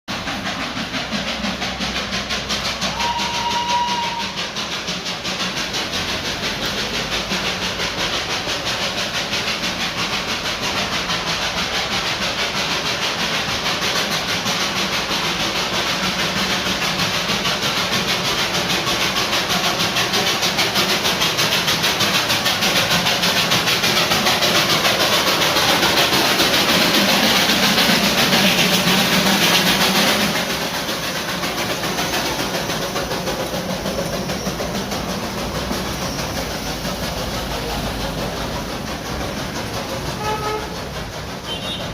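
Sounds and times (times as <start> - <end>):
train rattling: 0.1 - 41.9.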